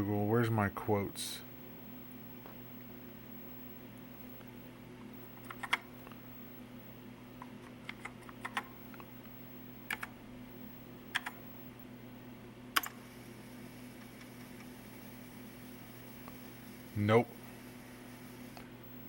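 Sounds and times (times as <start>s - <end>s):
steady low hum: 0.0s - 19.0s
keyboard typing clicks: 5.4s - 6.2s, 7.4s - 9.1s, 9.9s - 10.1s, 11.1s - 11.4s, 12.8s - 13.0s.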